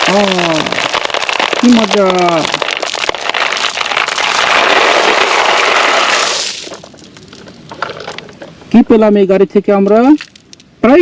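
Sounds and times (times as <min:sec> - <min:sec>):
glass marbles clattering: 0:00.0 - 0:08.4, 0:09.9 - 0:10.6.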